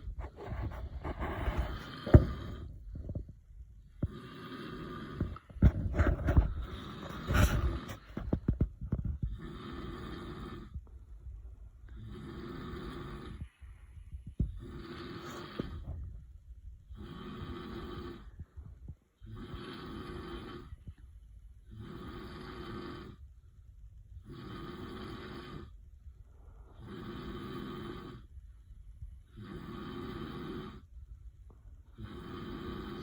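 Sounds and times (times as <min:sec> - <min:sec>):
man snoring: 0:01.1 - 0:02.7, 0:04.0 - 0:08.2, 0:09.2 - 0:10.8, 0:11.9 - 0:13.5, 0:14.4 - 0:15.9, 0:16.9 - 0:18.3, 0:19.2 - 0:20.9, 0:21.7 - 0:23.2, 0:24.2 - 0:25.7, 0:26.8 - 0:28.3, 0:29.3 - 0:30.9, 0:31.9 - 0:33.0.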